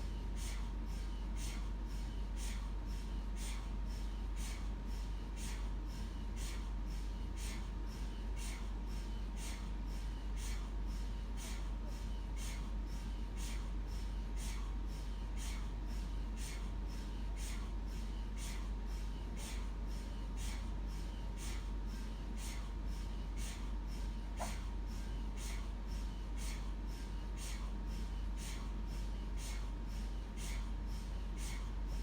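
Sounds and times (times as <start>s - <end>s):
steady low hum: 0.0s - 32.0s
mri scanner knocking: 23.5s - 26.9s.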